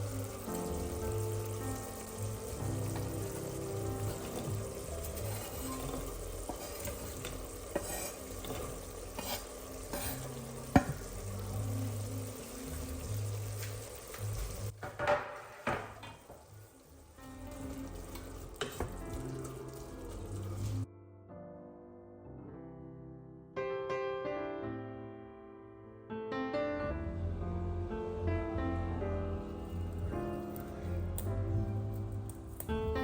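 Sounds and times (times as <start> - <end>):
soft piano music: 0.0 - 14.8, 16.5 - 33.0
food sizzling in a frying pan: 0.0 - 20.9
utensil knocking on pan: 6.5 - 11.1.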